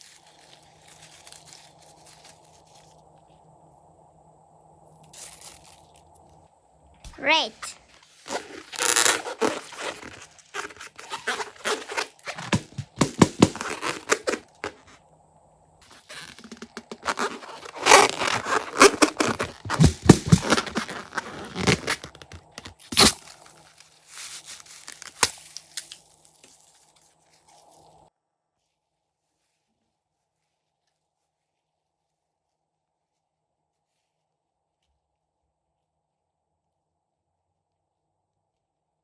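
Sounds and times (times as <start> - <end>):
crunchy slime crackling: 0.0 - 3.0, 7.1 - 15.0, 15.8 - 28.0.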